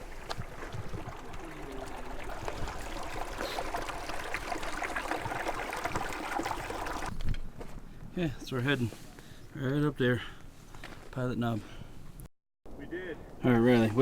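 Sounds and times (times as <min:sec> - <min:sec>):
stream running over rocks: 0:00.0 - 0:07.1.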